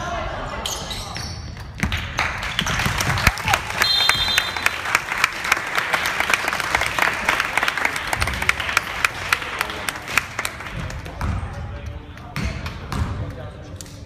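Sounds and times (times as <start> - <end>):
crowd applauding: 2.2 - 11.2.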